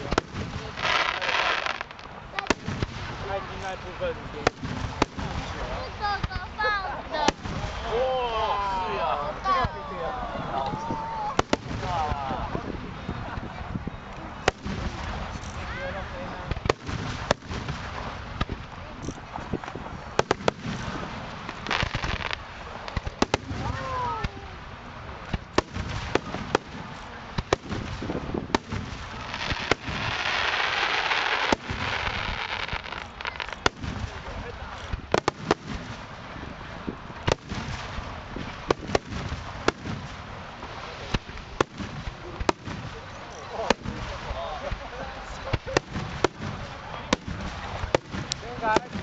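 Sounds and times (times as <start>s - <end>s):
fireworks crackling: 0.0s - 49.0s
firework shells bursting: 25.3s - 36.2s.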